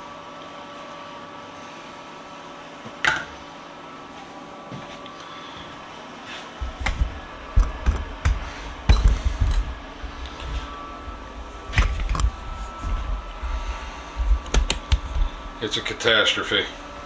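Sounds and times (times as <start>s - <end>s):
objects knocking and clunking: 6.6s - 15.8s.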